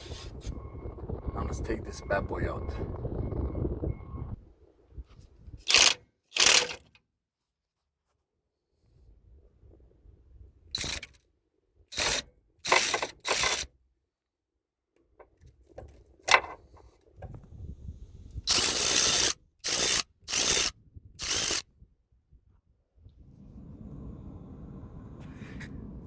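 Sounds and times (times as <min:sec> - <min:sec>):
ratchet wrench clicking: 0:05.7 - 0:06.9, 0:10.8 - 0:11.2, 0:11.9 - 0:13.7, 0:18.5 - 0:21.6.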